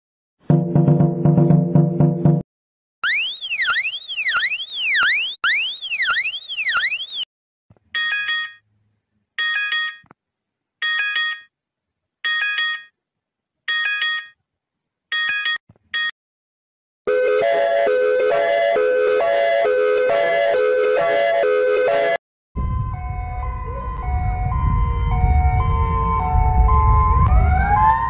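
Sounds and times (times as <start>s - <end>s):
chord-like electronic beeps: 3.0s - 7.2s
rising and falling alert warble: 3.0s - 7.3s.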